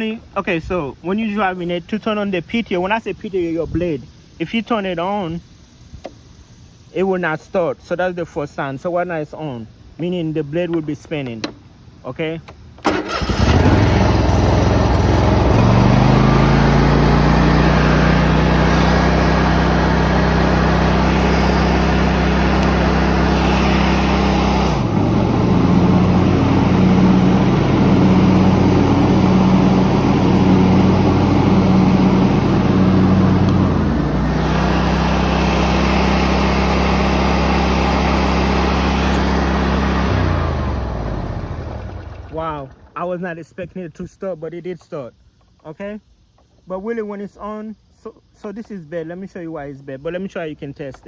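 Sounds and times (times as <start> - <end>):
mower engine running: 12.8 - 42.8.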